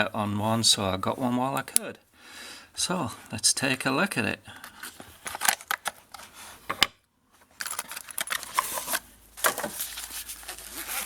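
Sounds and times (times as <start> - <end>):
knife box rustling and scraping: 7.4 - 11.0.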